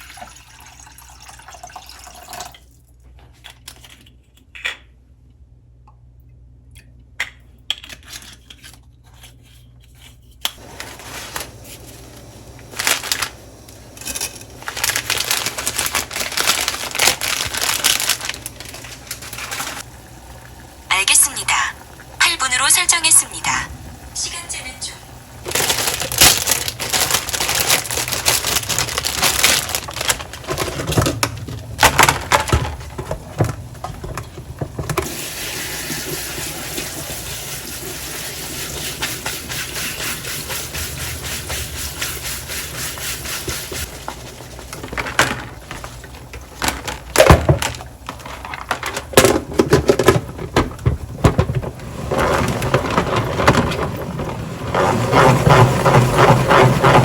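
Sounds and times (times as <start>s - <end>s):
containers and packaging clattering: 10.6s - 20.7s, 25.4s - 35.2s, 43.8s - 57.0s.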